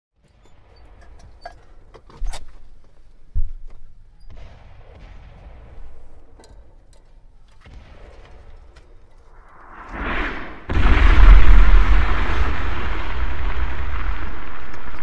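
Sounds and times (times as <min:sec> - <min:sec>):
steady low rumble: 0:09.3 - 0:15.0
heavy booms: 0:09.4 - 0:15.0.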